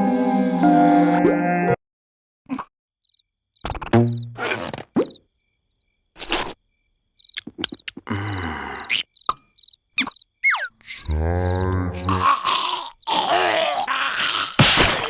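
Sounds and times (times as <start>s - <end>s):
crickets chirping faintly: 3.0s - 15.0s.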